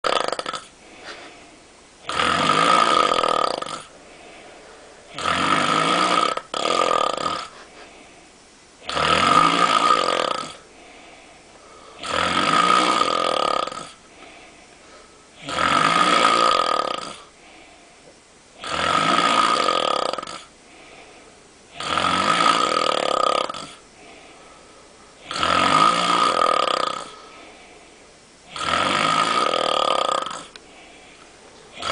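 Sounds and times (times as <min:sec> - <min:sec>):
man snoring loudly: 0:00.0 - 0:00.8, 0:02.0 - 0:04.0, 0:05.1 - 0:07.5, 0:08.8 - 0:10.7, 0:12.0 - 0:14.0, 0:15.4 - 0:17.3, 0:18.6 - 0:20.5, 0:21.7 - 0:24.2, 0:25.2 - 0:27.3, 0:28.5 - 0:30.6
quiet breathing: 0:00.7 - 0:01.8, 0:03.1 - 0:05.2, 0:07.5 - 0:08.6, 0:10.0 - 0:12.1, 0:13.2 - 0:15.4, 0:17.1 - 0:18.3, 0:20.4 - 0:21.8, 0:23.0 - 0:25.6, 0:26.4 - 0:28.6, 0:29.4 - 0:31.9.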